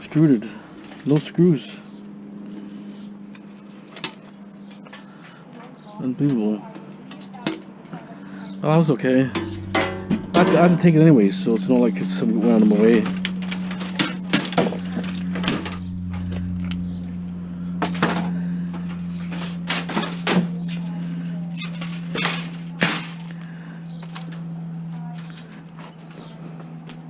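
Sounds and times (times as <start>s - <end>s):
steady low hum: 0.0s - 27.0s
scrap metal knocks and clatters: 9.4s - 10.6s.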